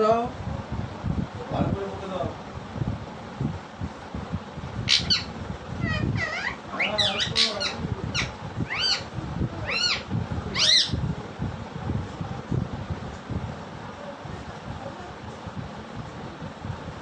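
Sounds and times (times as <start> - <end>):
parakeet screeching: 4.8 - 11.0
parakeet squawking and chirping: 4.8 - 11.0.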